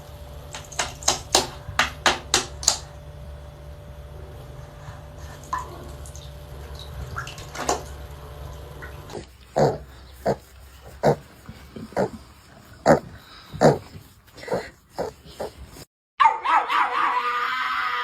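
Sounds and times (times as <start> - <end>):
low hum: 0.0 - 13.5
short low animal calls: 9.6 - 12.2, 12.8 - 15.6.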